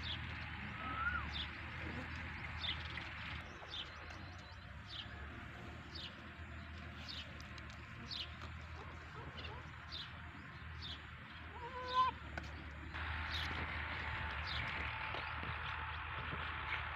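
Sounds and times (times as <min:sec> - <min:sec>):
lower animal call: 0:00.6 - 0:02.2, 0:11.4 - 0:12.2.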